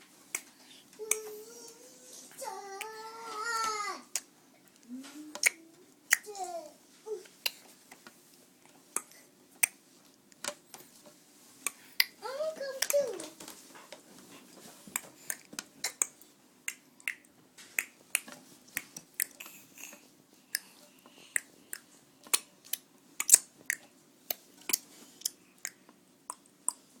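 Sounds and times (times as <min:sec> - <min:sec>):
baby's mouth clicks and lip smacks: 0:04.1 - 0:06.4, 0:07.4 - 0:08.0, 0:09.0 - 0:09.8, 0:11.6 - 0:12.2, 0:14.9 - 0:20.7, 0:21.3 - 0:26.8.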